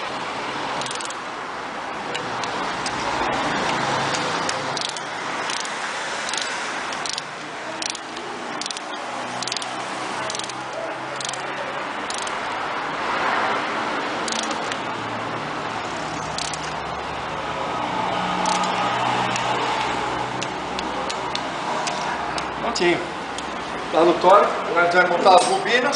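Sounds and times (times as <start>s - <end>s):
ratchet wrench clicking: 0.8s - 1.2s, 3.6s - 12.4s, 14.2s - 14.8s, 16.2s - 16.8s, 18.4s - 22.5s.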